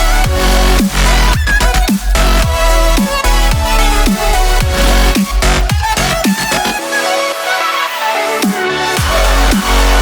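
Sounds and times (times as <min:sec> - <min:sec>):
heavy bass line: 0:00.0 - 0:06.8, 0:08.8 - 0:10.0
dubstep music: 0:00.0 - 0:10.0.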